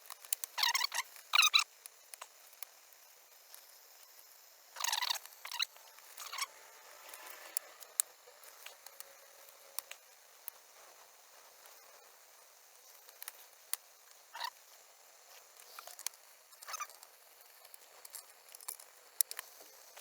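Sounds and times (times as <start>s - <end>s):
small plastic clicks: 0.0s - 2.7s, 13.0s - 13.9s, 15.5s - 20.0s.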